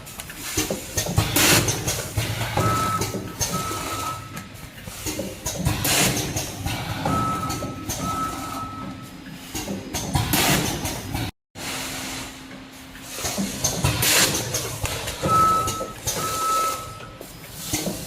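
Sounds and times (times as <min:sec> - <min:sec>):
packing machine clatter: 0:00.0 - 0:18.0
electronic beeps: 0:02.6 - 0:04.4, 0:07.1 - 0:09.1, 0:15.2 - 0:17.2.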